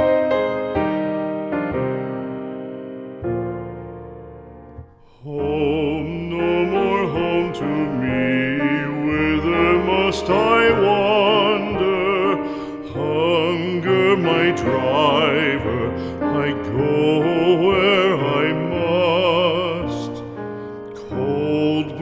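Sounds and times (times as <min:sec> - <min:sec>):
person singing classical song: 0:00.0 - 0:22.0
piano accompaniment: 0:00.0 - 0:22.0.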